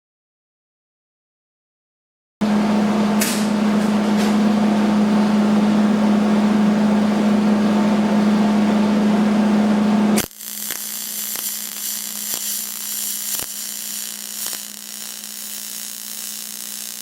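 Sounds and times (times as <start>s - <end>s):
sharp crackles: 10.2s - 17.0s
welder hum: 10.2s - 17.0s
welding arc buzz and hiss: 10.2s - 17.0s.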